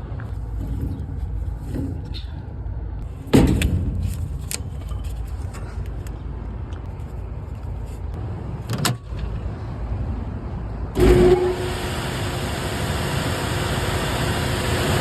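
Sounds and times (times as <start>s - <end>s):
hvac unit rumbling: 0.0s - 8.4s
loud rush of machinery: 10.9s - 15.0s.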